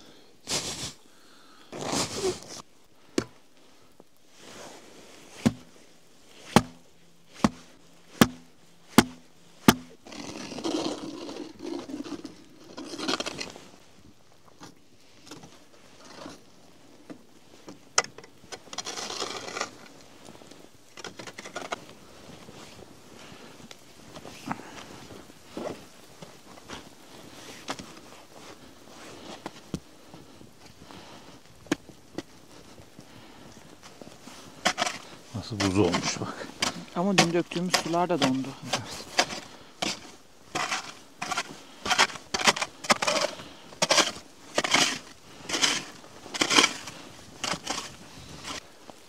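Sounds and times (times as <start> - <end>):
scraping: 4.4 - 13.7, 34.2 - 48.6
sharp knocks: 8.2 - 9.9.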